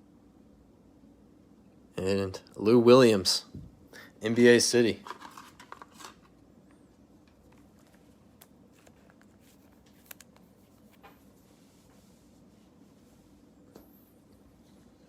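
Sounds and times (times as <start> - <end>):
quiet room hum: 0.0 - 15.0
trading cards clicking and rustling: 7.2 - 11.2.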